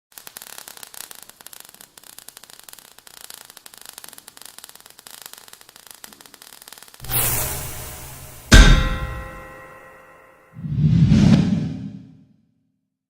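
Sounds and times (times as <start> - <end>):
crackling static: 0.1 - 7.0.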